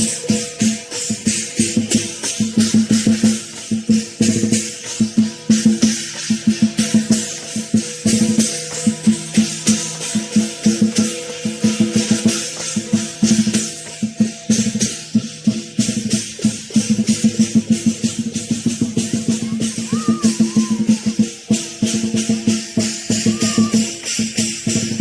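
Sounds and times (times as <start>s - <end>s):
big drum fast rhythm: 0.0s - 25.0s
clashing cymbals: 0.0s - 25.0s.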